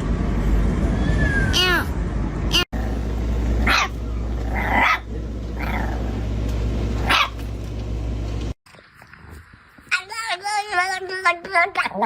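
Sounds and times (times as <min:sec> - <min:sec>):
steady low hum: 0:01.9 - 0:08.6
dog barking: 0:03.6 - 0:04.0, 0:07.1 - 0:07.4.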